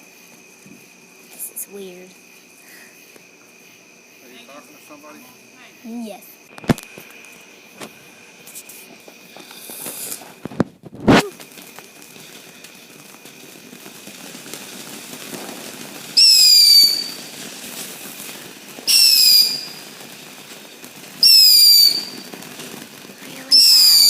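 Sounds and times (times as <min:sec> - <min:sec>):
firework pop: 0:06.5 - 0:24.0
shrill firework whistles: 0:06.7 - 0:24.0.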